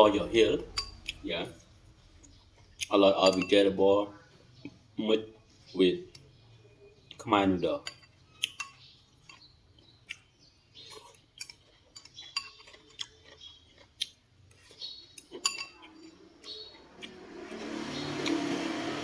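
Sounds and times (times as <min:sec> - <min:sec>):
utensils clinking against a bowl: 0:00.6 - 0:01.2, 0:03.1 - 0:03.8, 0:07.7 - 0:09.6, 0:10.8 - 0:13.9, 0:14.6 - 0:18.4.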